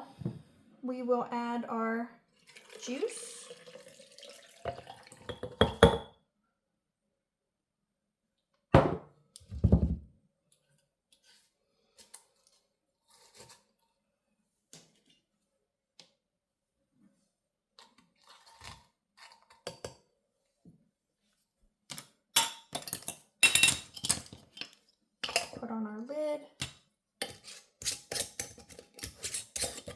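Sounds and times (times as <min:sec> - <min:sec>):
kitchenware clinking and clattering: 0:03.5 - 0:06.1, 0:21.9 - 0:25.6, 0:26.6 - 0:29.9
glass jar knocks: 0:05.3 - 0:06.1, 0:08.8 - 0:09.0.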